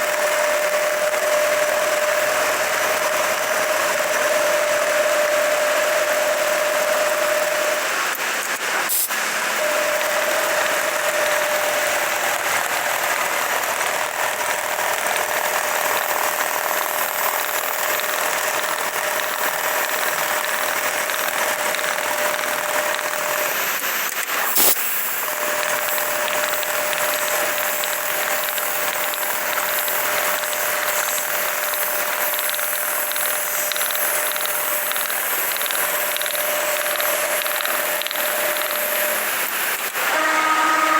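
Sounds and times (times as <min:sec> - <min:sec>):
sewing machine humming: 0:00.0 - 0:40.9
sharp clicks: 0:24.1 - 0:40.1.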